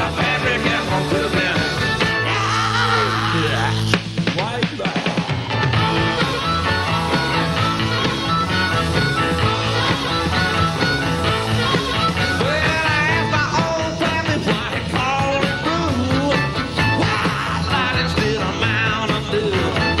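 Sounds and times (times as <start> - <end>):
country-rock band playing: 0.0 - 20.0
wavering lead line: 4.8 - 20.0.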